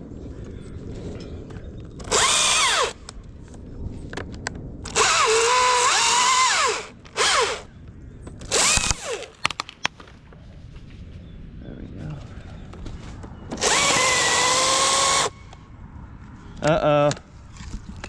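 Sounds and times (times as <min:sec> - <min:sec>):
battery chainsaw cutting wood: 0:02.1 - 0:03.0, 0:04.9 - 0:07.7, 0:08.5 - 0:09.4, 0:13.6 - 0:15.4.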